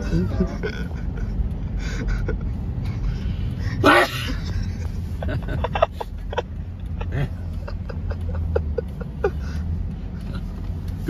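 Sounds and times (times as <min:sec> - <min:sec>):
low steady rumble: 0:00.0 - 0:11.0
man sneezing: 0:03.8 - 0:04.4.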